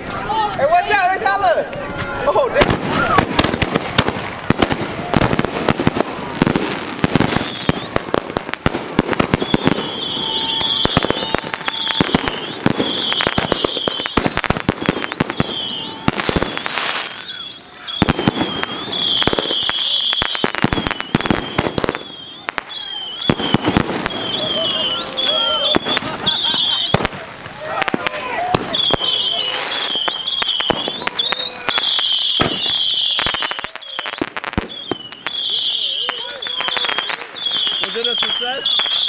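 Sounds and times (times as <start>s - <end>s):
fireworks bangs and crackling: 0.0s - 39.0s
high warbling firework whistles: 7.1s - 27.2s, 28.6s - 39.0s.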